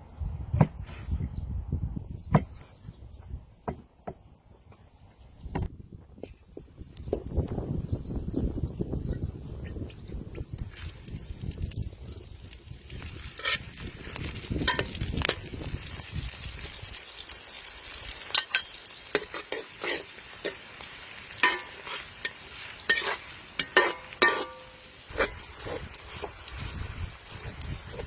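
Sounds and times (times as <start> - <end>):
liver sizzling in a pan: 10.8 - 28.0
utensil clacking against pan: 21.4 - 25.4.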